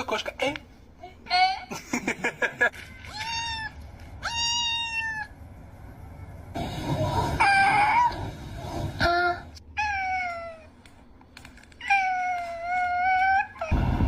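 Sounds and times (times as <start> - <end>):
cat meowing and yowling: 3.1 - 5.3, 9.8 - 10.7.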